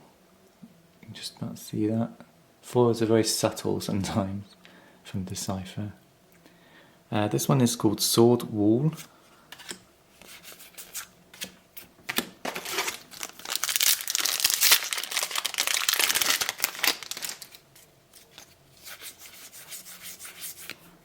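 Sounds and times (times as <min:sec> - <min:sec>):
wrapper tearing and crinkling: 0:12.1 - 0:18.6.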